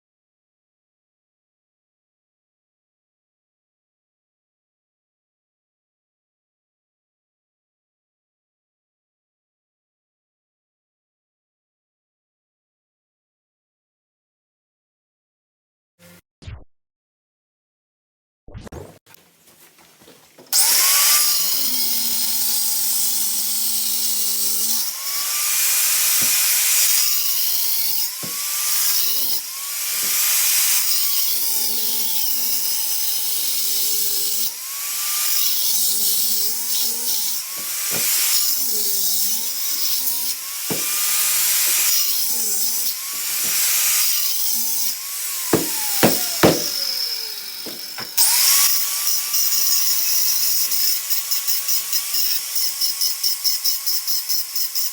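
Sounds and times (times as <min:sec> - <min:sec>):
power tool motor whine: 0:20.4 - 0:54.9
sharp knocks: 0:40.7 - 0:41.0, 0:45.6 - 0:48.2.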